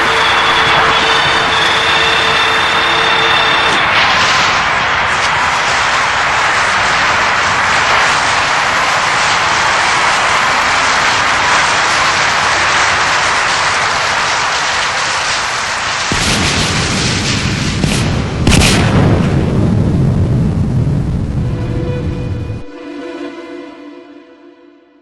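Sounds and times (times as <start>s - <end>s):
deep rumble: 0.0s - 22.8s
loud rushing noise: 0.0s - 24.0s.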